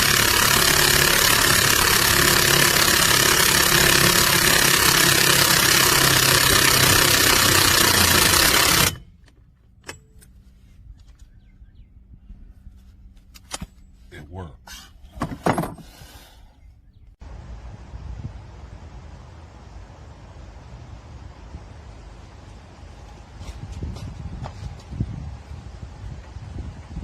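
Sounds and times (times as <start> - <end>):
impact wrench hammering: 0.0 - 9.1.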